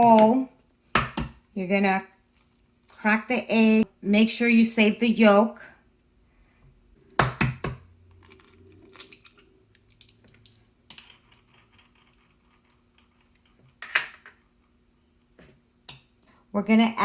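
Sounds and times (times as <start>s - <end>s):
egg cracking: 6.8s - 16.2s.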